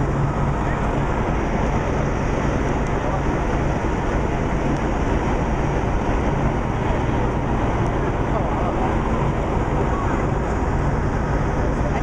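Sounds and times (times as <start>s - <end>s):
bus engine and road noise: 0.0s - 12.0s.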